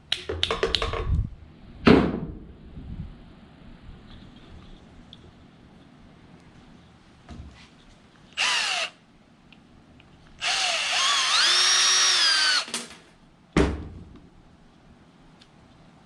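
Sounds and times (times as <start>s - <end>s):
power drill whining: 8.4s - 9.0s, 10.4s - 12.8s.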